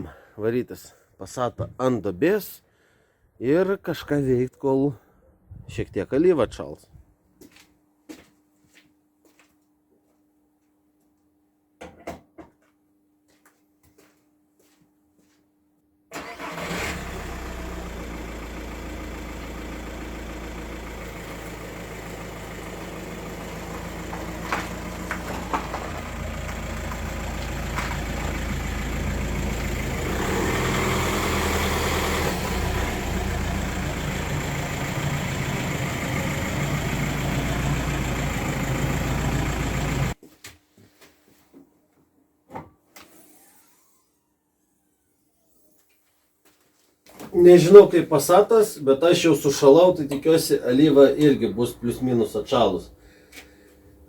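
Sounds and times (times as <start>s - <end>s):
diesel engine starting and idling: 16.1s - 40.2s.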